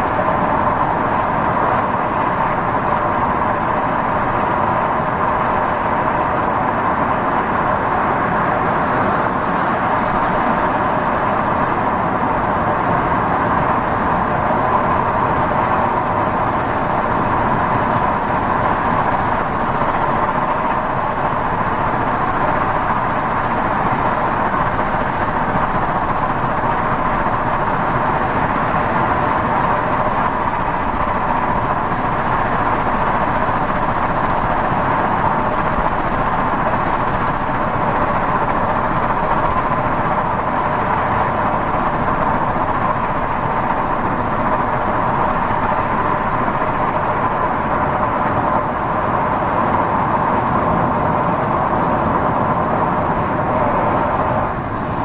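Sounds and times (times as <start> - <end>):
car road noise from cabin: 0.0 - 55.0.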